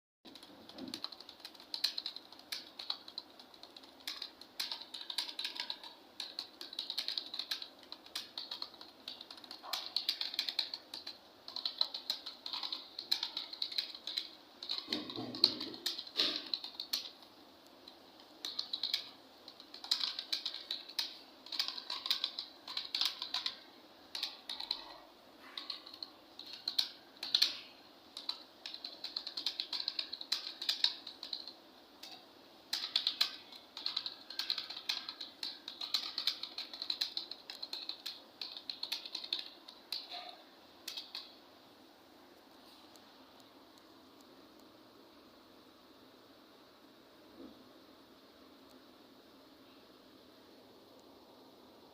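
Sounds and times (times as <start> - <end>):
fast keyboard typing: 0.3 - 41.4.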